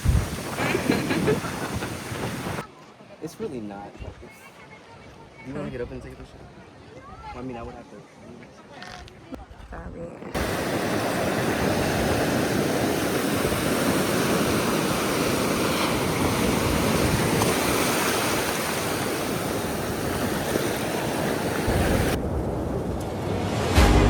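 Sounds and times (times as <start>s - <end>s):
ocean surf washing: 0.0s - 2.6s, 10.3s - 24.0s
wind: 0.0s - 24.0s.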